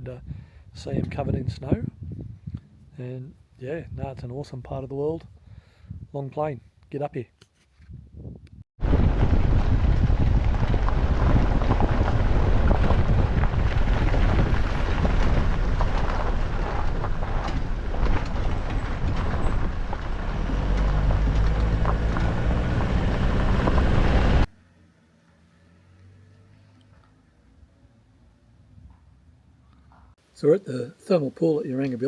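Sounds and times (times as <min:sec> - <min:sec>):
road and wind noise: 0:00.0 - 0:06.8, 0:07.7 - 0:30.2
low engine hum: 0:08.9 - 0:27.8.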